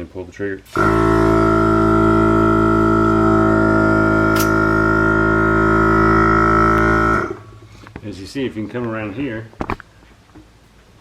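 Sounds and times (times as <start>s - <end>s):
air compressor motor droning: 0.7s - 8.1s.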